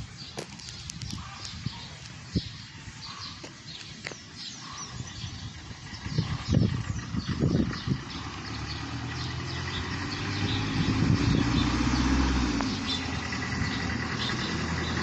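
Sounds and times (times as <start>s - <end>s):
vehicle engine passing: 5.4s - 15.0s.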